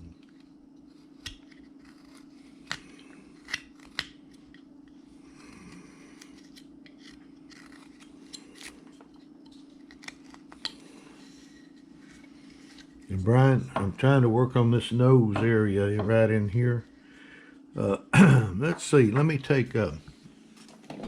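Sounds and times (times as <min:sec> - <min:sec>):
steady low hum: 0:00.0 - 0:21.0
knife scraping wood: 0:00.3 - 0:04.6, 0:05.3 - 0:13.1.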